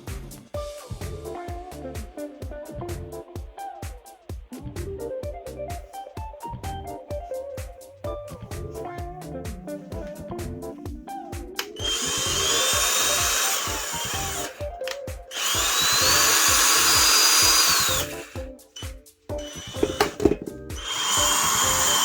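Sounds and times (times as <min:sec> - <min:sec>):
background music with beat: 0:00.0 - 0:22.0
cordless drill motor whine: 0:11.7 - 0:18.5, 0:19.4 - 0:22.0.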